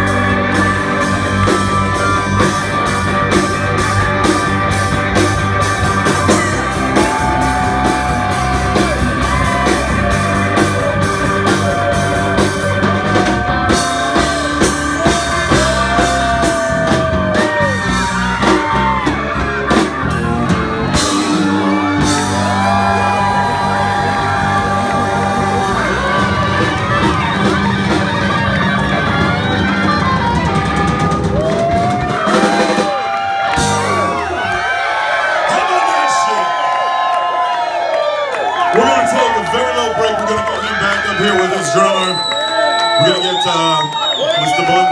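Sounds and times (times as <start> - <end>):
electric guitar lines: 0.0 - 34.9
bass guitar: 0.0 - 35.4
drums: 0.0 - 44.9.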